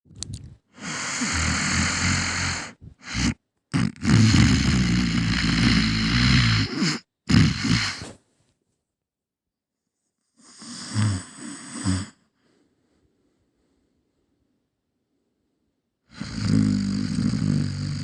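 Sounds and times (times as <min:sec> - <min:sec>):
person snoring: 0:00.7 - 0:08.2, 0:10.4 - 0:12.4, 0:16.1 - 0:18.0
short snorts: 0:00.8 - 0:08.2.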